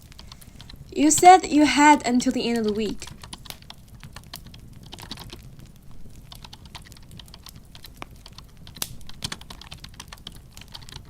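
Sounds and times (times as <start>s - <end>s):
keyboard typing: 0.3s - 3.7s.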